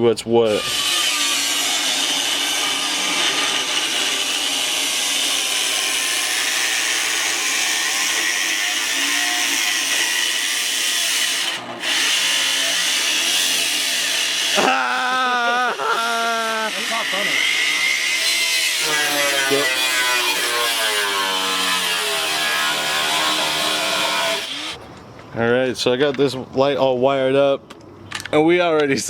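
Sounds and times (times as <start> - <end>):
power tool cutting steel: 0.5 - 24.8.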